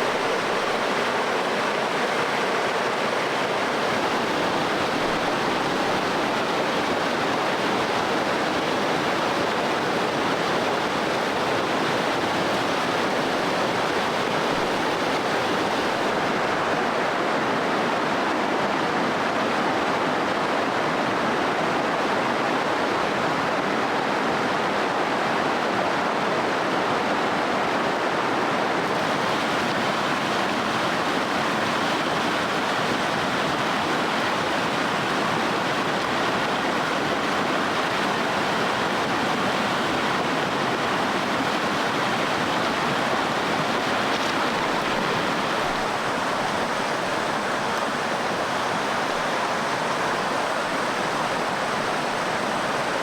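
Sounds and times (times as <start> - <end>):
stream water running: 0.0 - 16.8, 28.7 - 53.0.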